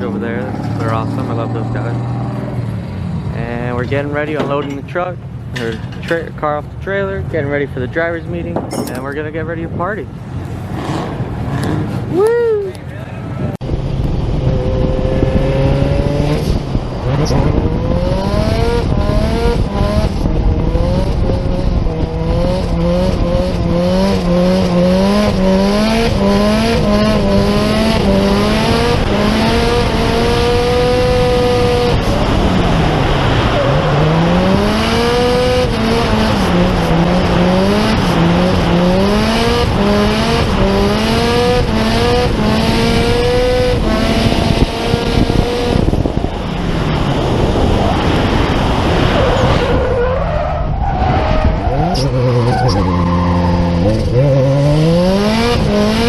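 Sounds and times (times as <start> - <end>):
rush of noise: 0.0 - 56.0
car engine revving hard: 10.6 - 12.1, 13.9 - 56.0.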